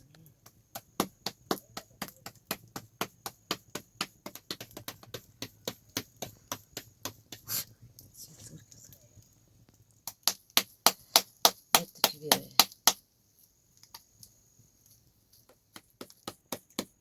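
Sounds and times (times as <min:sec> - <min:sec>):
rapid sharp knocks: 0:00.7 - 0:07.5, 0:15.5 - 0:17.0.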